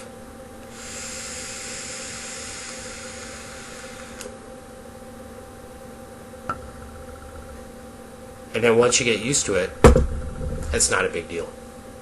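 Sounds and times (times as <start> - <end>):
faint steady hum: 0.0 - 12.0
person breathing through a vape: 0.6 - 4.4.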